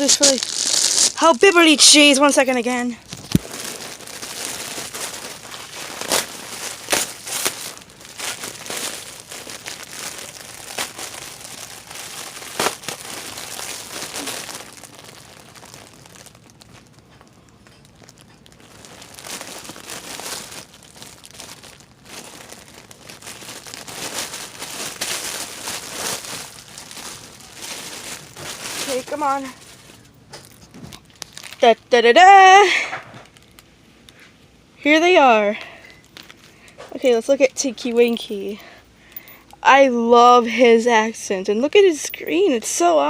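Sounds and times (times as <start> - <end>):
packaging crinkling and tearing: 0.0 - 31.7, 33.2 - 33.8, 35.9 - 36.5.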